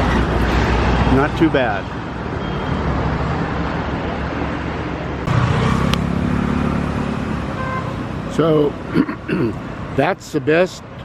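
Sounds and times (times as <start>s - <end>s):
vehicle engines running: 0.0s - 11.0s
vehicle passing close by: 2.7s - 8.7s.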